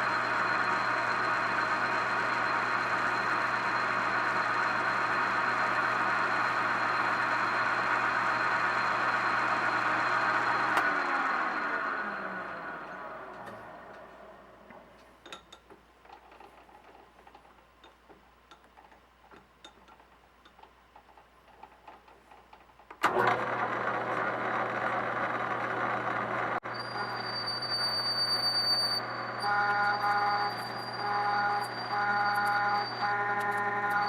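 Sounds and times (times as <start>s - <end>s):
metal lathe humming: 0.0s - 14.2s, 23.1s - 34.0s
high gear whine: 23.0s - 34.0s
pulsing squeal of tool cutting: 26.6s - 34.0s.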